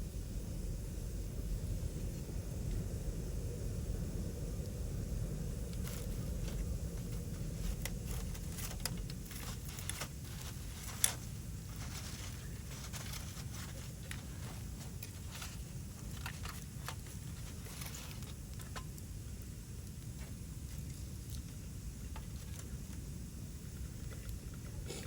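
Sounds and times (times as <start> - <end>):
steady low rumble: 0.0 - 25.0
wood fire popping and ticking: 5.6 - 10.3.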